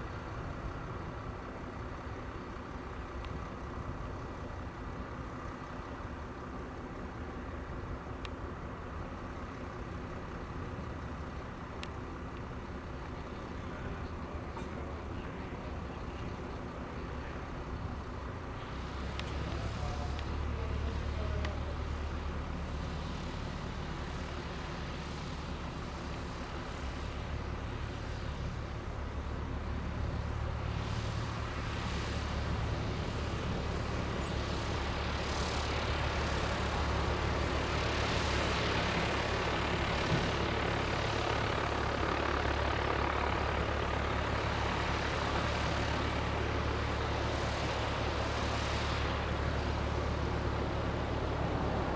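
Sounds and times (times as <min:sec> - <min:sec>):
light aircraft engine droning: 0:00.0 - 0:51.9.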